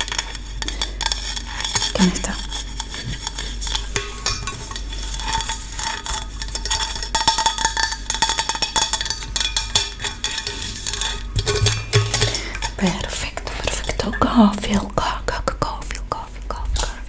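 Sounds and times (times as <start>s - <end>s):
faint metallic clinks: 6.6s - 14.1s.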